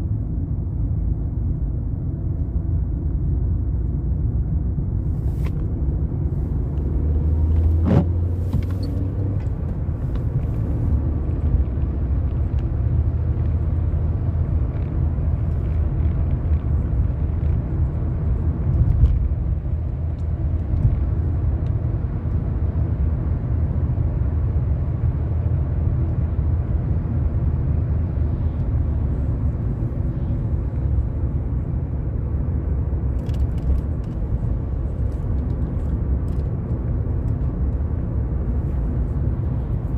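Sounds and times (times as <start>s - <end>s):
engine and road noise: 0.0s - 39.9s.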